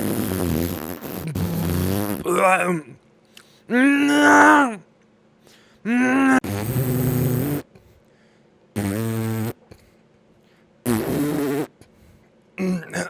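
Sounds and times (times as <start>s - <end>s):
fart sound effects: 0.0s - 2.4s, 6.1s - 7.7s, 8.8s - 9.7s, 10.9s - 11.8s.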